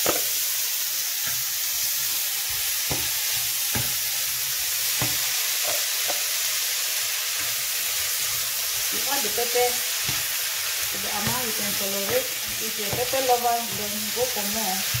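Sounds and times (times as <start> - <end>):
meat sizzling in a frying pan: 0.0 - 15.0
utensil knocking against pan: 11.0 - 14.1.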